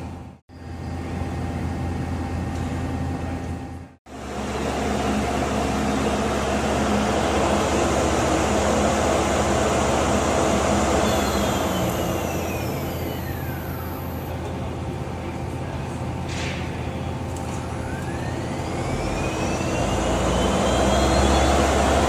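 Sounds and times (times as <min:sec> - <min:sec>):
lathe running with low hum: 0:00.0 - 0:16.1, 0:16.9 - 0:22.0
whine falling in pitch: 0:04.9 - 0:14.4.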